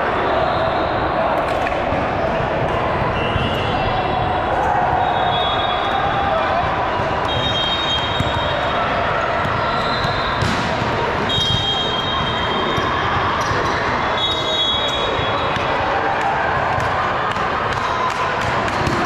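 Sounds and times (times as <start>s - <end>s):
murmur of voices: 0.0s - 19.0s
volleyball hits and thuds: 9.4s - 13.6s, 16.7s - 19.0s.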